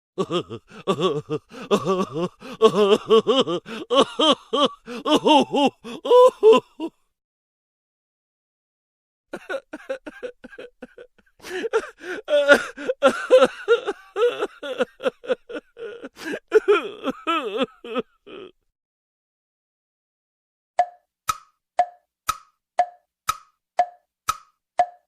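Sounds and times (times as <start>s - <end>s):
person laughing: 0.2s - 7.0s, 9.3s - 18.6s.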